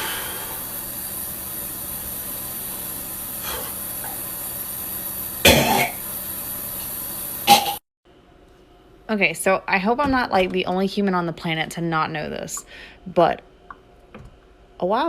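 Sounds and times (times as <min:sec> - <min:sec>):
person coughing: 0:05.4 - 0:06.0, 0:07.5 - 0:07.8.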